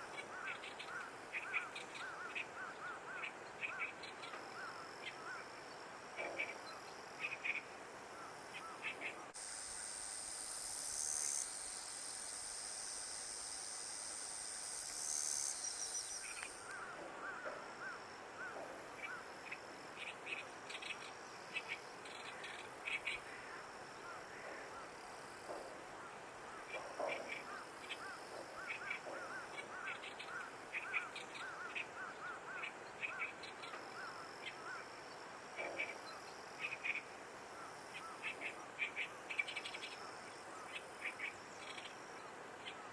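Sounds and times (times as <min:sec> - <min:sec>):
high hiss with whistle tone: 0:09.3 - 0:16.8.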